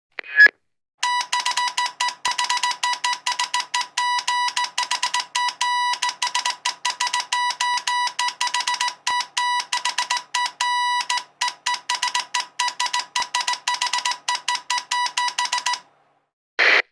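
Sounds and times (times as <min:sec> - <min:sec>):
morse code beeps: 0:00.3 - 0:15.9.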